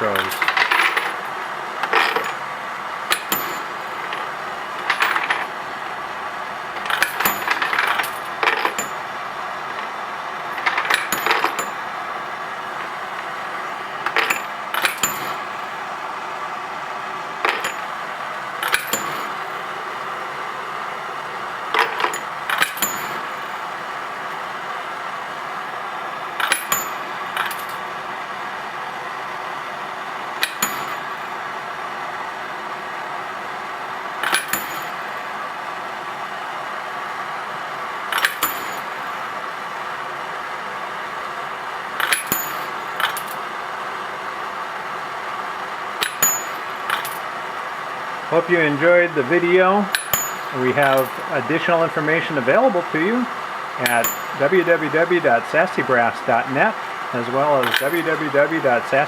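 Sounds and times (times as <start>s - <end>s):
brass cases clinking: 0.0s - 2.4s, 3.1s - 5.6s, 6.8s - 9.1s, 9.7s - 12.0s, 12.6s - 15.7s, 17.4s - 18.0s, 18.6s - 19.6s, 21.7s - 23.6s, 26.4s - 27.9s, 30.4s - 31.3s, 34.2s - 35.1s, 38.1s - 39.2s, 42.0s - 43.5s, 46.0s - 47.3s, 49.2s - 51.9s, 53.8s - 55.8s, 57.1s - 59.0s.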